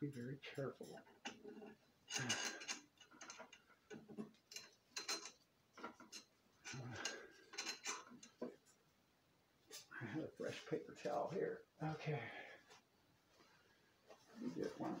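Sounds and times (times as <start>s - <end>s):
metal parts and tools clattering: 0.9s - 8.5s.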